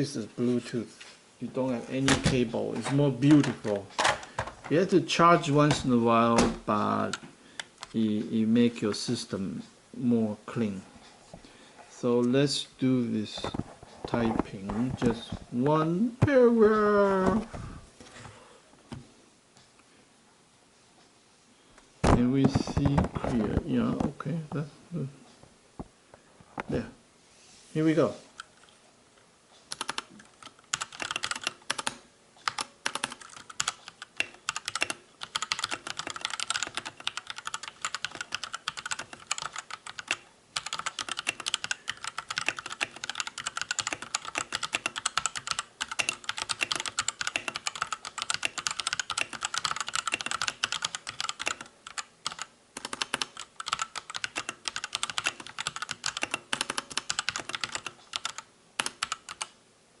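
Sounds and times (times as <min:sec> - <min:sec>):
mechanical keyboard typing: 0:29.7 - 0:59.6.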